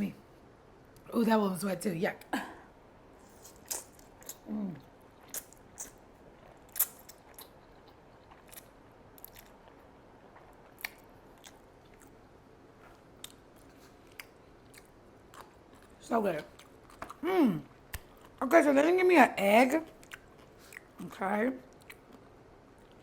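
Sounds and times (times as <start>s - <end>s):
biting and chewing food: 3.3s - 12.2s.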